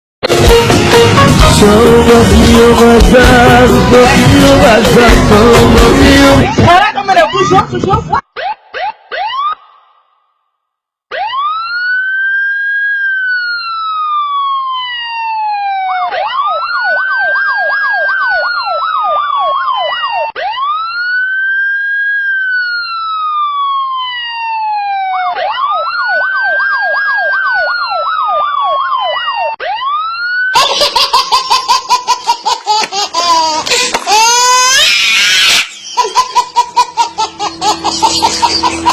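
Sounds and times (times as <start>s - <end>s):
police siren wailing and yelping: 3.2s - 10.0s, 11.1s - 38.9s.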